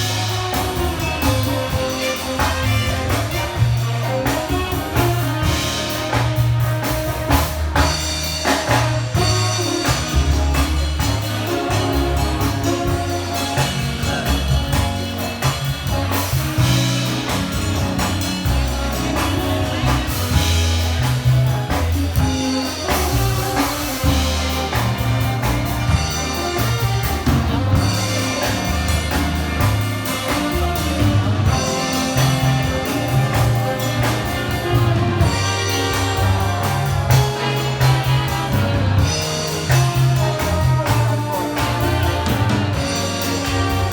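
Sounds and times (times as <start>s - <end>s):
bass line: 0.0s - 43.9s
big band playing live: 0.0s - 43.9s
drum kit: 0.0s - 43.9s.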